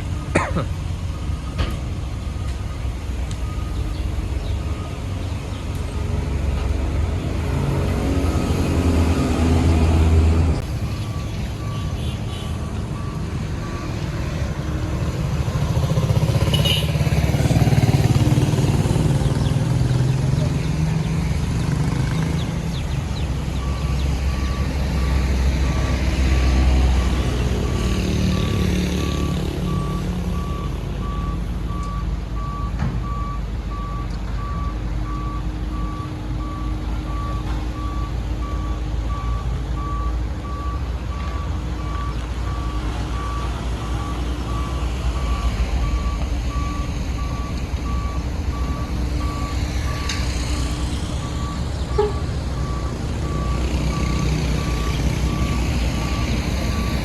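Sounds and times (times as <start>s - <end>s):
low rumble of diesel engines: 0.0s - 57.0s
reversing alarm beeping: 1.1s - 5.1s, 10.7s - 14.5s, 23.6s - 57.0s.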